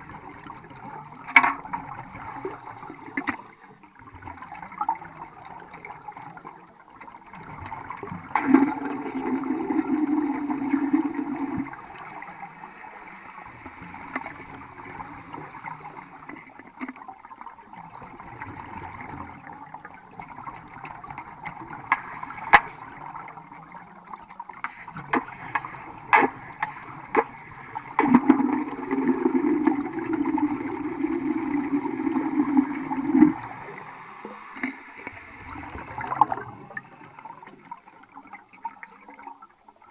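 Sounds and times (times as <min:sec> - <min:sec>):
steady hiss: 0:08.6 - 0:16.7, 0:24.6 - 0:37.6.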